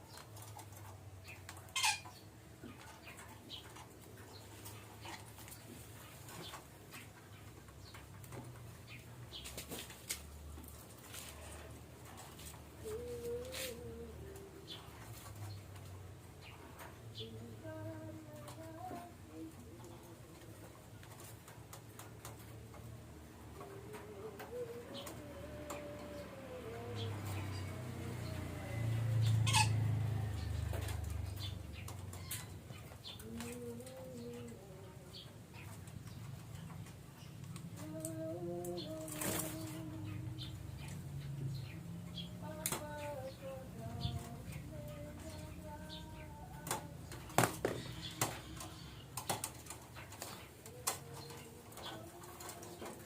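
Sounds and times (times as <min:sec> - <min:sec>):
parakeet squawking: 0:01.7 - 0:02.2, 0:29.4 - 0:29.9.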